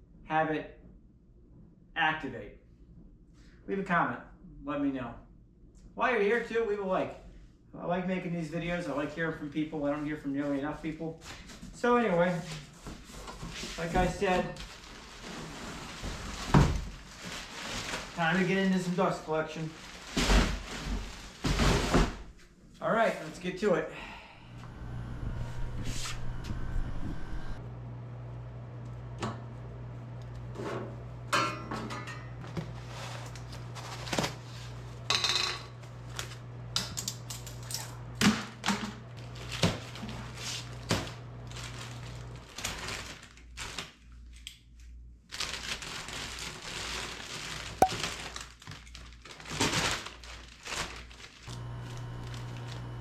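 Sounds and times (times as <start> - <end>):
low hum: 24.2 - 28.9.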